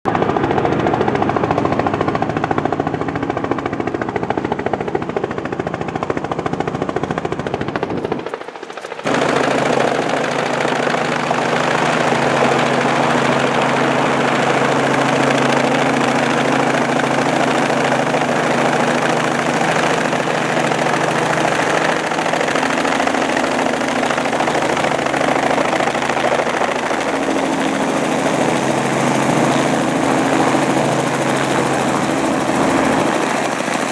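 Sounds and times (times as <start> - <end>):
helicopter rotor chopping: 0.1 - 33.9.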